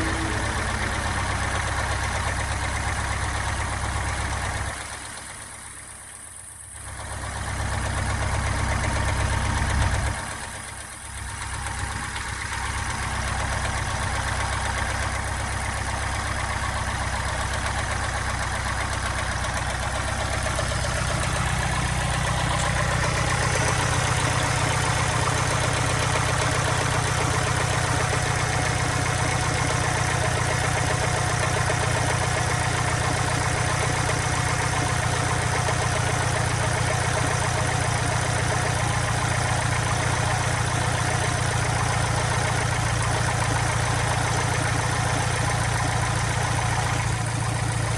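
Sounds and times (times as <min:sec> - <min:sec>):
engine idling with knock: 0:00.0 - 0:47.9.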